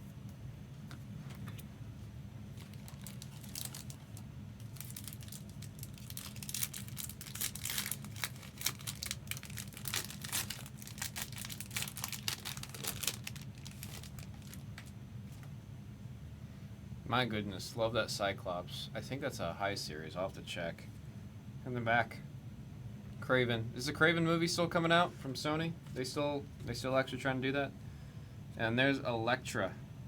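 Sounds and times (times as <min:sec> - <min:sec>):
wrapper crinkling and tearing: 0:02.5 - 0:14.9.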